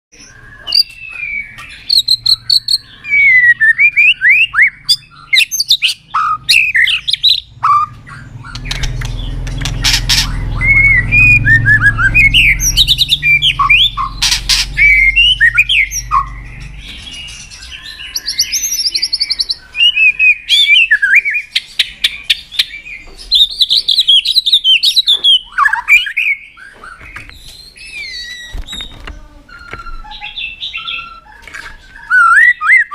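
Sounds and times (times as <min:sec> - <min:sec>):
bird singing whistled phrases: 0:00.2 - 0:09.2, 0:10.2 - 0:14.2, 0:14.8 - 0:32.9
low steady rumble: 0:06.6 - 0:17.4.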